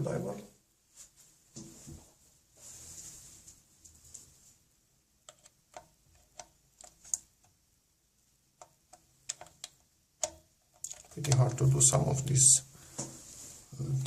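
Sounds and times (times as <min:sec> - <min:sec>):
screwdriver clicks and taps: 0:05.3 - 0:07.6, 0:08.6 - 0:11.1.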